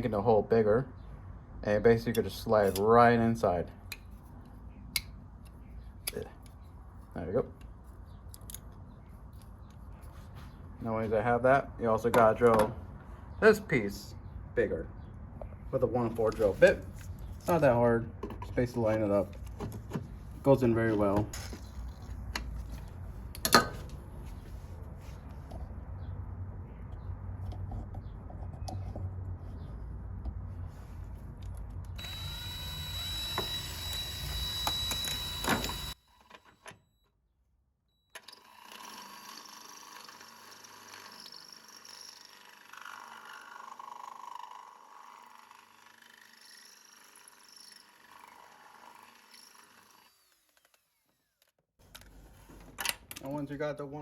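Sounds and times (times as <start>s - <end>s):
electric drill boring metal: 32.0s - 36.5s, 38.2s - 51.2s.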